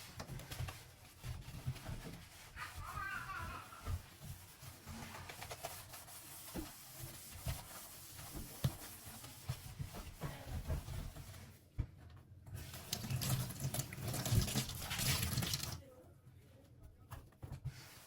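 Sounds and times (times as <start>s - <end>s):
rubbing by hand: 0.0s - 11.5s.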